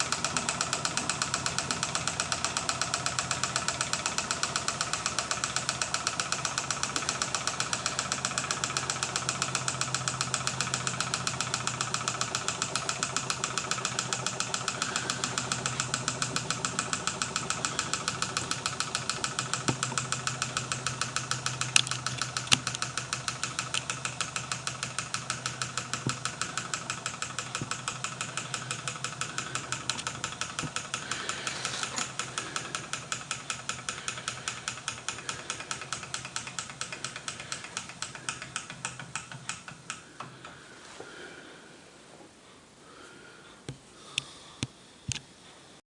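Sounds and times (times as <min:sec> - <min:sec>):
engine ticking rapidly: 0:00.0 - 0:41.6
loud clicks: 0:11.4 - 0:40.6.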